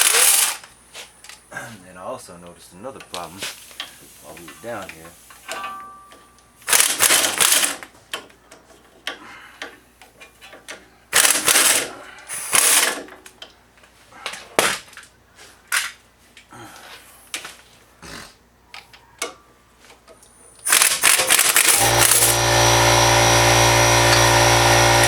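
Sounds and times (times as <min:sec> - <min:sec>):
small ratchet clicks: 0:00.0 - 0:00.6, 0:11.2 - 0:11.8, 0:20.6 - 0:22.4
ratchet backing out bolts: 0:00.0 - 0:01.4.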